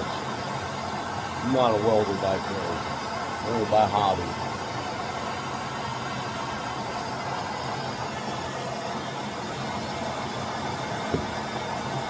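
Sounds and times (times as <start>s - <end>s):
heat gun fan humming: 0.0s - 12.0s.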